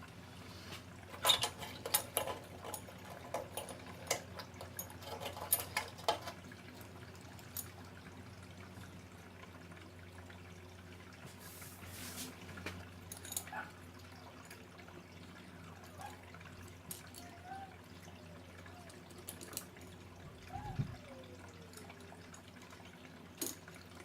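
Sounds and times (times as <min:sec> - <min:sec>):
metallic clicks of small parts: 0:01.1 - 0:06.4, 0:19.1 - 0:19.8.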